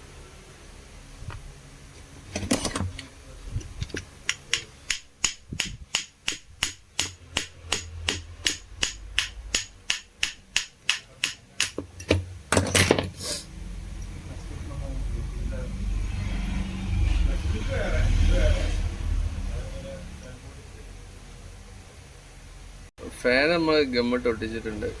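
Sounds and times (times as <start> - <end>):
clatter of handling metal parts: 2.2 - 3.1, 11.8 - 13.2
hammer tapping on metal: 3.8 - 12.8.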